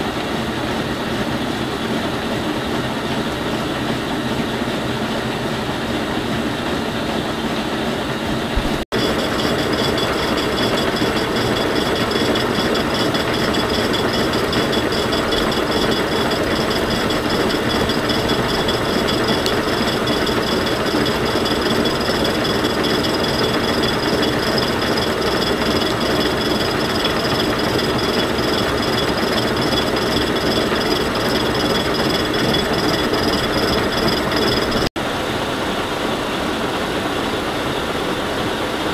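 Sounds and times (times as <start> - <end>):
high machine whine: 8.2 - 35.0
milling machine cutting metal: 8.6 - 34.9.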